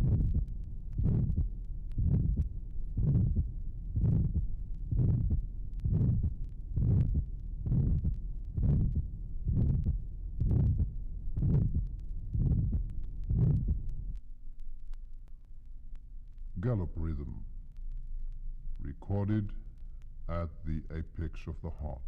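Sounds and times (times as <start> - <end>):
rough heart murmur: 0.0 - 13.9
heartbeat through stethoscope: 0.0 - 14.1.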